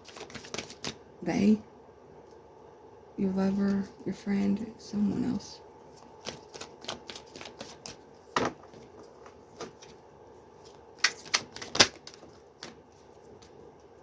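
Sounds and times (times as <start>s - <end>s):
cards clicking: 11.0s - 12.8s.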